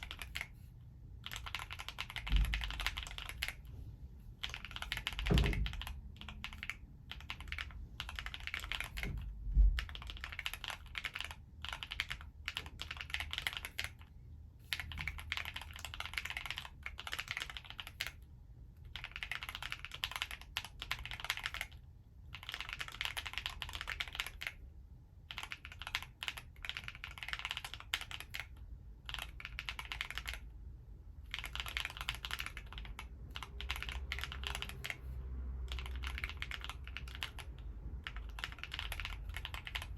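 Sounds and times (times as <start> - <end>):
mechanical keyboard key clacks: 4.4 - 14.0, 35.7 - 39.9.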